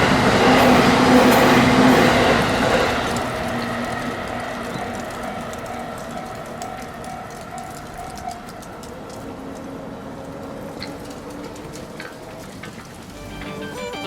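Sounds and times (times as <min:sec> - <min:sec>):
level-crossing warning bell: 0:00.0 - 0:07.2, 0:13.1 - 0:14.0
railway clicks: 0:00.0 - 0:14.0.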